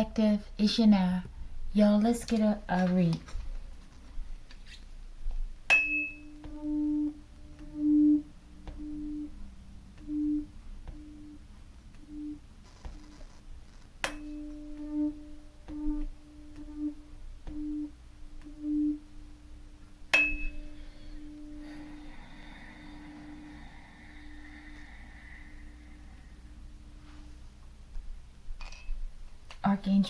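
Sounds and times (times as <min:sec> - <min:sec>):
tuning fork humming: 0:05.4 - 0:29.3
tuning fork strike tap: 0:08.6 - 0:11.2, 0:20.1 - 0:20.7.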